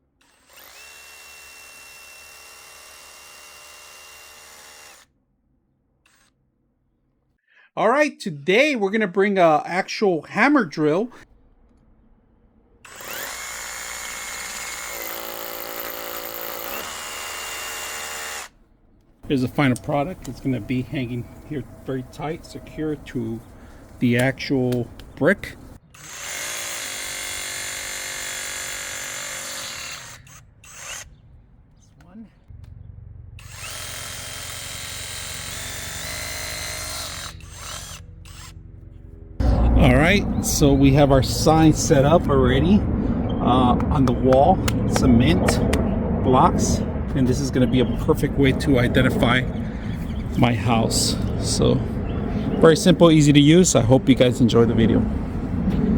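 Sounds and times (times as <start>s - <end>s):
hammer drill drilling into brick: 0.2s - 5.1s, 12.8s - 18.6s, 25.9s - 31.1s, 33.4s - 38.5s
steady low hum: 15.7s - 25.8s, 32.3s - 55.9s.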